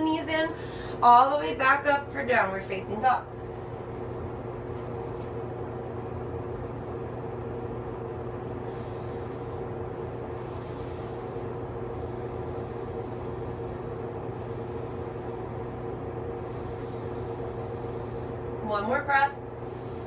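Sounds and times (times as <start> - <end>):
steady background hum: 0.0 - 20.0.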